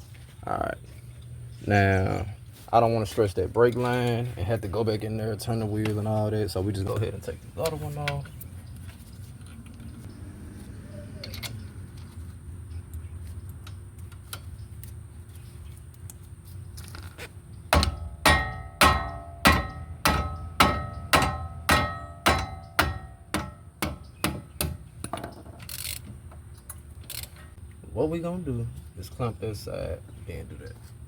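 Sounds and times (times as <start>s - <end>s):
hammer striking metal: 17.7s - 24.8s.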